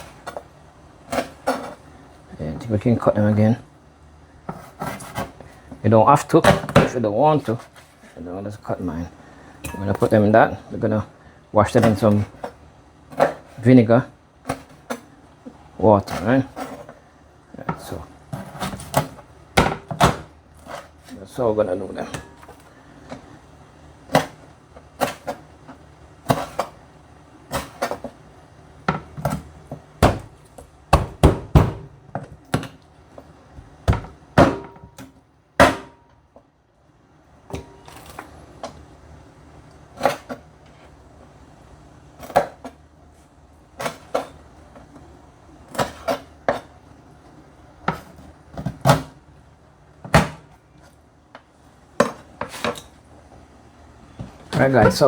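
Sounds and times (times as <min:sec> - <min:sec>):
knife chopping on cutting board: 0:30.0 - 0:32.7.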